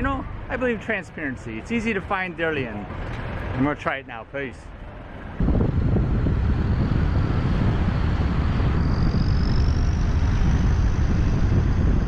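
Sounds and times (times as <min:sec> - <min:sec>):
vehicle rumbling in motion: 0:00.0 - 0:12.0
faint high whine: 0:05.4 - 0:12.0.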